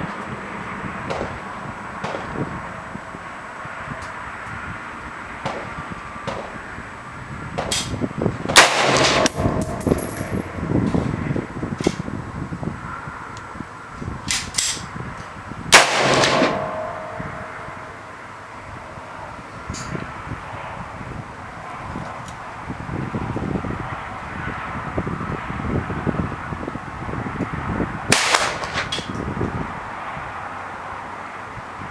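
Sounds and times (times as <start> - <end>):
loud rifle shots with echo: 1.1 - 2.5, 5.4 - 6.8, 7.6 - 10.8, 15.7 - 18.0, 28.1 - 29.0.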